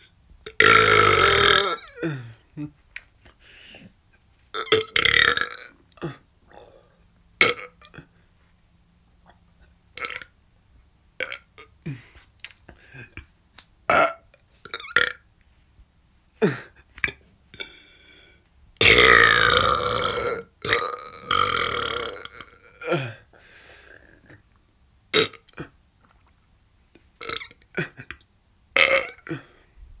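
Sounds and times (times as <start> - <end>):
person belching: 0.5 - 2.7, 4.6 - 8.1, 18.8 - 23.2, 27.2 - 28.2, 28.8 - 29.6.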